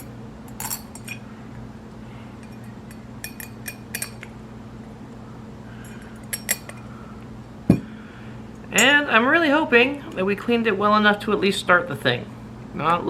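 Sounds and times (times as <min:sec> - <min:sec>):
small metal parts clinking: 0:00.0 - 0:01.2, 0:05.8 - 0:06.8
steady low hum: 0:00.0 - 0:13.0.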